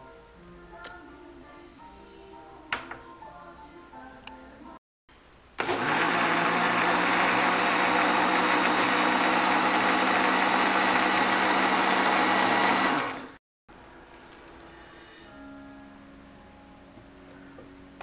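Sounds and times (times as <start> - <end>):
electric blender motor humming: 5.6 - 13.4.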